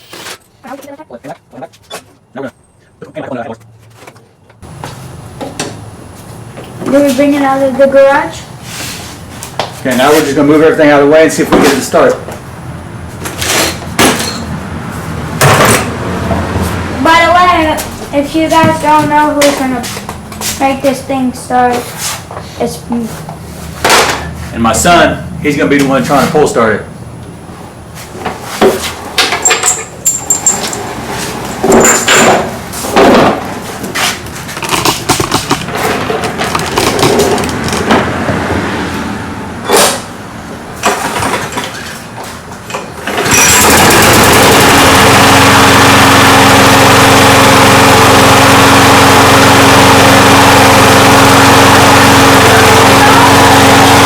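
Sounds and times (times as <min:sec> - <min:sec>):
recoil starter pulled: 0:34.6 - 0:37.9, 0:43.0 - 0:54.0
mower engine running: 0:43.0 - 0:54.0.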